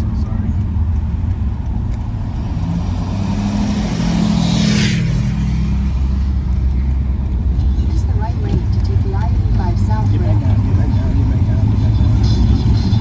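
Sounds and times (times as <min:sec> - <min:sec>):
car engine and road rumble: 0:00.0 - 0:13.0
rushing whoosh: 0:02.1 - 0:06.2.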